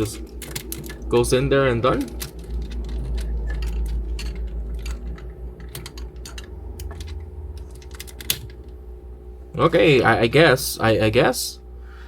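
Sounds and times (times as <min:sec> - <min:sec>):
plastic parts clicking and tapping: 0:00.0 - 0:01.2, 0:01.8 - 0:08.8
steady low rumble: 0:00.0 - 0:12.0.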